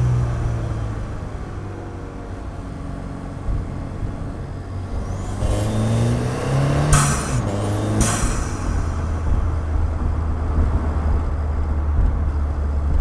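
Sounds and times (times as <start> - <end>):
car engine accelerating: 0.0 - 13.0
turbo boost release whoosh: 4.9 - 10.4.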